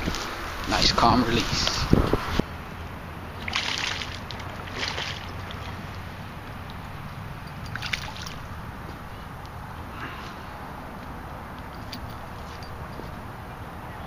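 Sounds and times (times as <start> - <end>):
water splashes: 3.3 - 6.8, 7.6 - 8.5
lake water sloshing: 3.4 - 6.8, 7.6 - 8.5.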